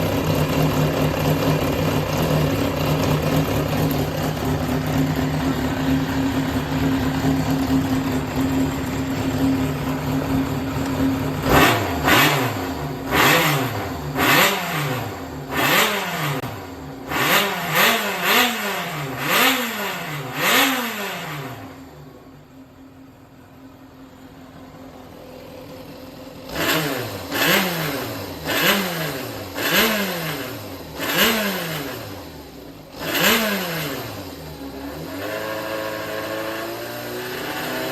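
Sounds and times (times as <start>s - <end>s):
motorcycle engine idling: 0.0s - 18.2s, 21.4s - 29.6s, 31.8s - 33.0s
engine revving: 0.0s - 22.0s, 26.4s - 37.9s.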